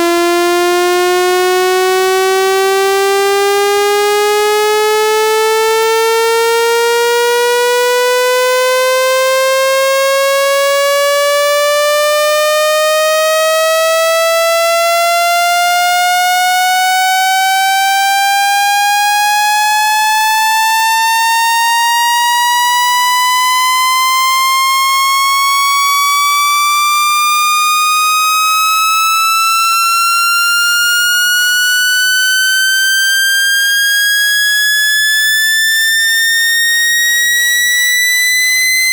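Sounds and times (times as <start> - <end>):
buzzy tone sweeping upward: 29.9 - 38.9.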